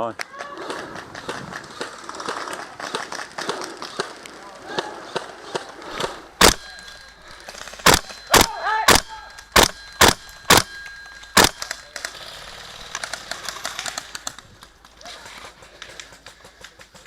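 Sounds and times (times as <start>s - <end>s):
rustling: 0.7s - 17.0s
airsoft rifle shots: 5.9s - 12.2s.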